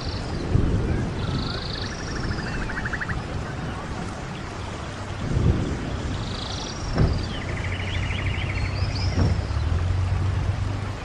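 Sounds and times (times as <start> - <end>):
birds trilling: 0.0 - 10.0
waterfall rushing: 0.0 - 11.0
low thumps: 6.9 - 11.0.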